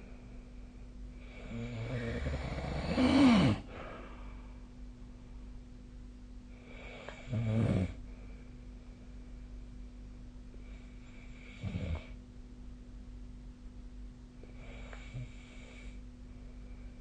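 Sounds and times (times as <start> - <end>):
faint steady hum: 0.0 - 17.0
person snoring: 1.2 - 4.2, 6.7 - 8.0.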